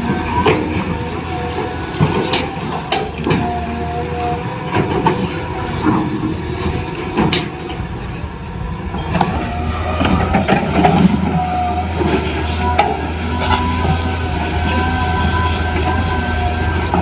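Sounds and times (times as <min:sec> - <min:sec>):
constant low hum: 0:00.0 - 0:17.0
small electric motors running: 0:00.0 - 0:17.0.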